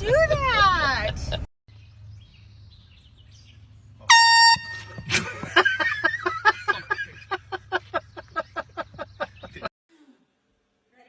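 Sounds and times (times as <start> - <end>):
handheld air horn blast: 4.1 - 5.5.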